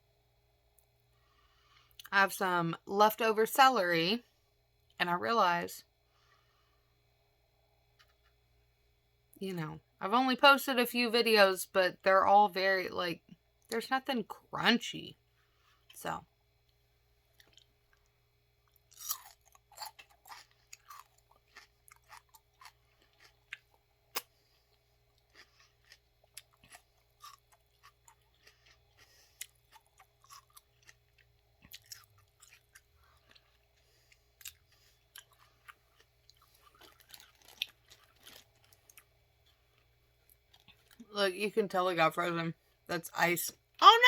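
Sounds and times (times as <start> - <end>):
crisp celery crunching: 18.7 - 24.3, 25.1 - 41.1.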